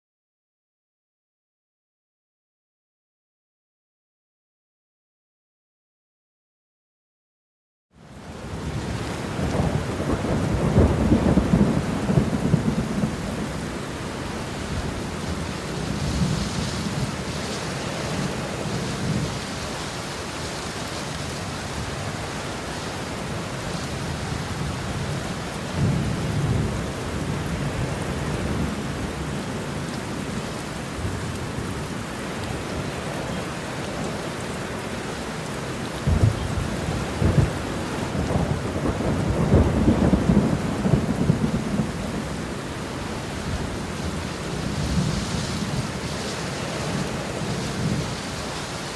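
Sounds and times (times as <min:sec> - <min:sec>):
steady rain: 0:08.0 - 0:48.9
thunder rumbling and cracking: 0:08.5 - 0:13.8, 0:23.9 - 0:29.4, 0:36.0 - 0:46.2.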